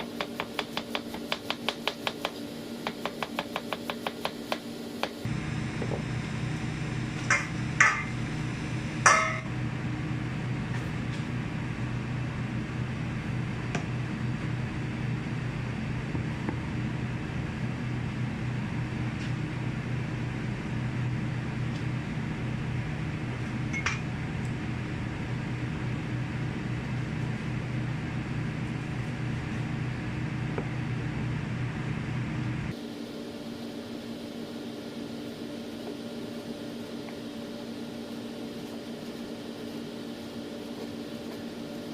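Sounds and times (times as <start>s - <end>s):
kitchen appliance humming: 5.0s - 32.8s
glass clinking: 9.1s - 9.5s.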